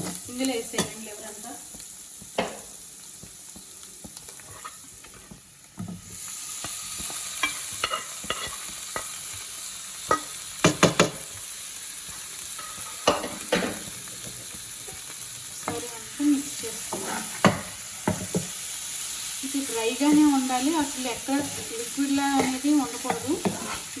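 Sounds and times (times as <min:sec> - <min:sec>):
liver sizzling in a pan: 0:00.0 - 0:24.0
spatula knocking and scraping pan: 0:07.0 - 0:09.2, 0:10.1 - 0:11.3, 0:12.6 - 0:15.0, 0:16.8 - 0:18.6, 0:20.0 - 0:24.0.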